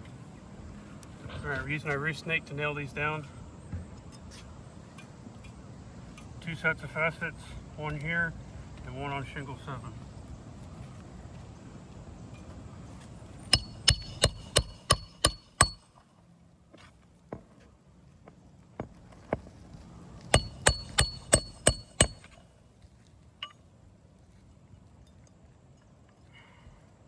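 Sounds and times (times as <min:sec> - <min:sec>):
hammer striking roofing nails: 0:13.5 - 0:15.9, 0:20.3 - 0:22.4.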